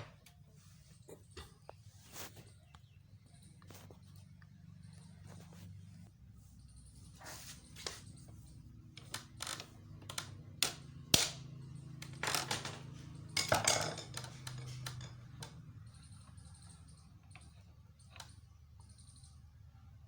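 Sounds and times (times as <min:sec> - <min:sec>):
metal taps and knocks: 0:12.1 - 0:15.8.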